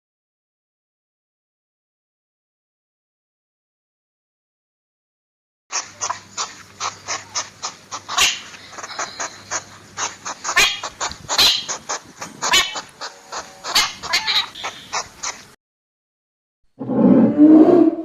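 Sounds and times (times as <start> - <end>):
higher animal cries: 5.7 - 15.4
wild animal short sharp calls: 5.7 - 15.5.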